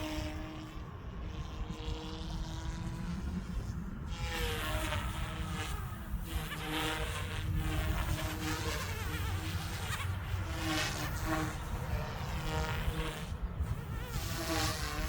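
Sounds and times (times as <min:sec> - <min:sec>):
rc helicopter motor whine: 0:00.0 - 0:15.0.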